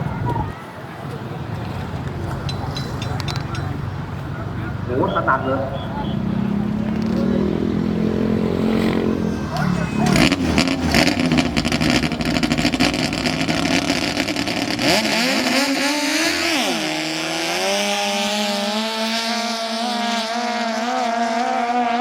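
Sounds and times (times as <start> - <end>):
speedboat engine running: 9.0 - 14.8.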